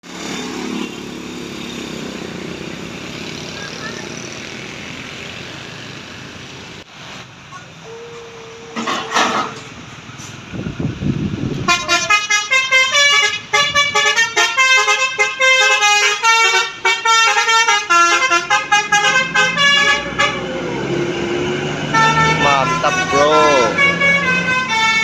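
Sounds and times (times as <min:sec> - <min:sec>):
low vehicle rumble: 0:00.0 - 0:14.2
bus horn playing a melody: 0:11.6 - 0:20.7, 0:21.8 - 0:25.0.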